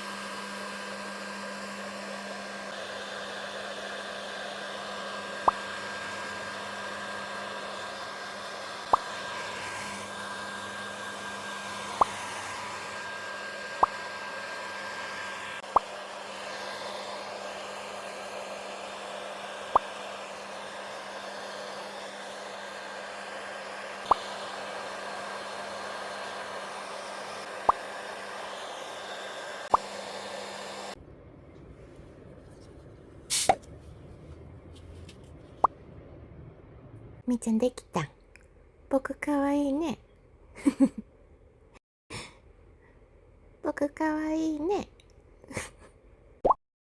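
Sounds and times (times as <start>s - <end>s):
hair dryer running: 0.0s - 36.2s.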